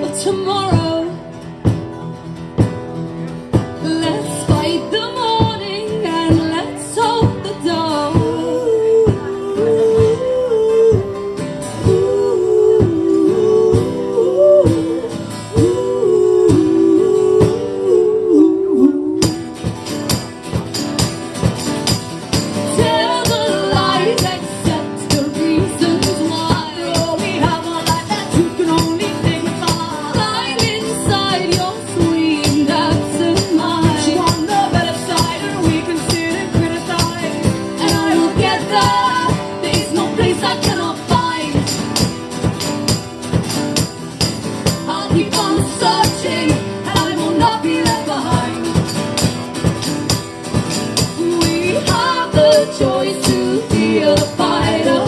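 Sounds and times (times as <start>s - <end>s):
live band instrumental: 0.0s - 55.0s
busy percussive beat: 19.2s - 55.0s.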